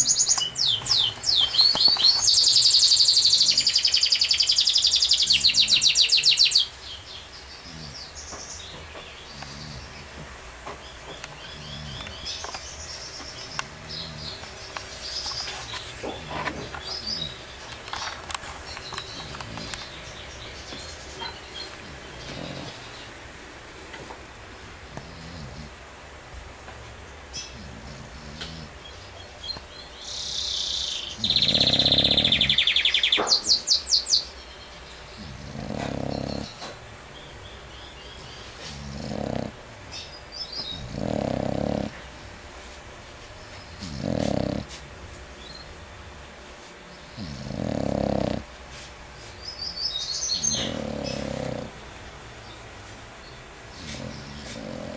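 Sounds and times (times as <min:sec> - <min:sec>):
birds chirping: 0:00.0 - 0:54.9
dog snoring: 0:05.2 - 0:06.3, 0:07.6 - 0:10.4, 0:11.1 - 0:12.5, 0:13.3 - 0:17.4, 0:18.8 - 0:20.2, 0:21.2 - 0:23.1, 0:24.9 - 0:25.8, 0:27.4 - 0:29.0, 0:31.2 - 0:32.7, 0:35.1 - 0:36.8, 0:38.5 - 0:39.6, 0:40.6 - 0:42.1, 0:43.7 - 0:44.8, 0:47.1 - 0:48.6, 0:50.4 - 0:51.8, 0:53.7 - 0:54.9.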